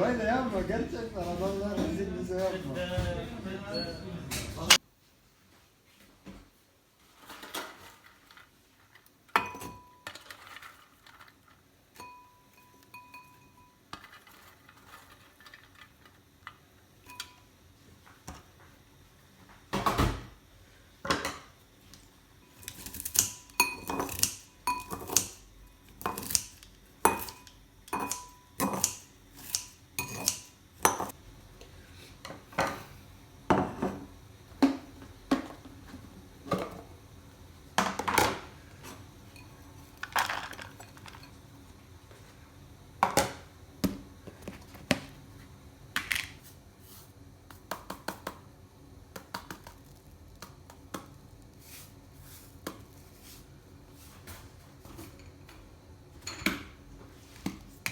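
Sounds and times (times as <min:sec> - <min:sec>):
utensils clinking against dishes: 0:12.0 - 0:15.2, 0:17.0 - 0:17.5, 0:22.4 - 0:31.2, 0:56.2 - 0:56.7.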